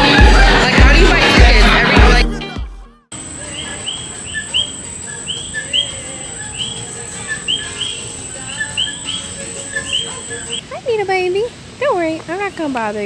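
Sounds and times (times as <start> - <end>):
birds chirping: 3.2 - 13.0.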